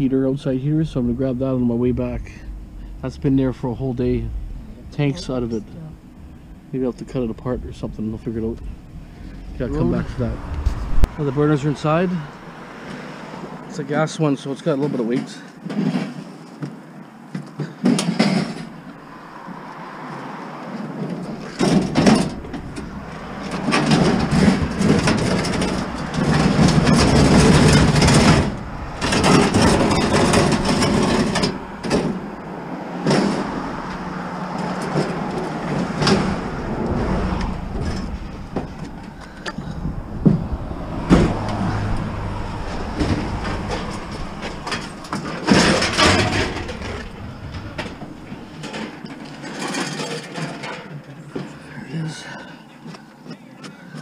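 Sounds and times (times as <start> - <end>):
van engine rumble: 0.0 - 14.0, 17.7 - 52.2
scrap metal rattling and clanking: 17.6 - 19.3, 20.9 - 51.5
sharp knocks: 21.2 - 49.2.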